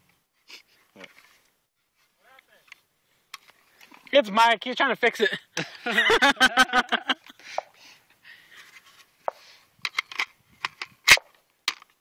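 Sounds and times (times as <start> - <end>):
rifle metallic clicks: 9.8 - 12.0.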